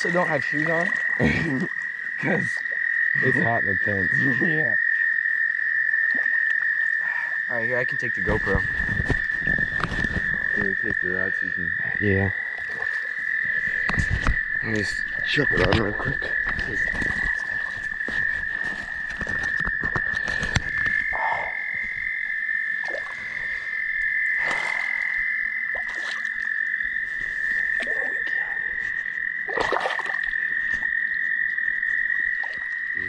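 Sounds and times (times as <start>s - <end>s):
frogs trilling: 0.0s - 33.0s.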